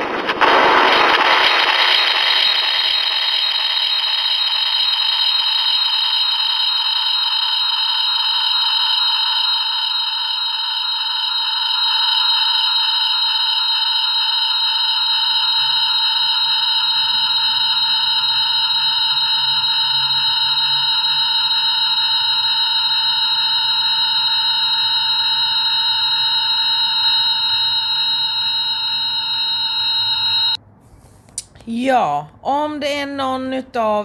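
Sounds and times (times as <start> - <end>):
high-pitched drone: 15.0 - 30.6.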